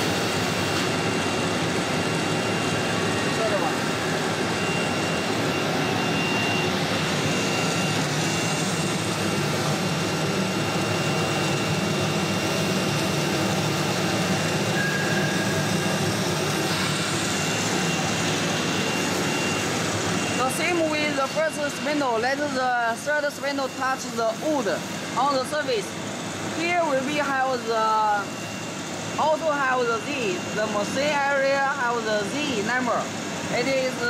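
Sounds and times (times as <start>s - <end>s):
thin high whine: 0.0s - 12.8s, 14.4s - 25.5s
workshop machinery drone: 0.0s - 34.0s
brief higher tone: 14.8s - 15.6s.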